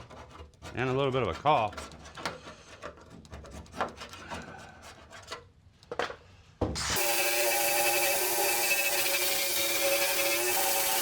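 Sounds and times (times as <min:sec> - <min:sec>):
scraping and rubbing on metal: 0:00.0 - 0:05.5
electric power tool running: 0:06.8 - 0:11.0.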